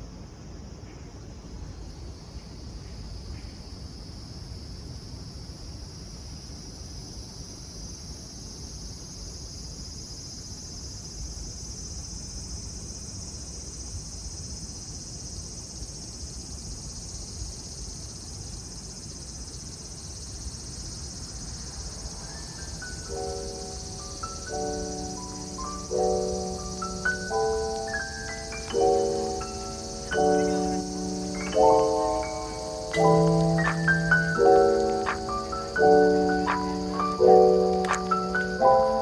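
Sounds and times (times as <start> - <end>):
cicada chorus: 0.0 - 39.0
marimba-like music: 24.1 - 39.0.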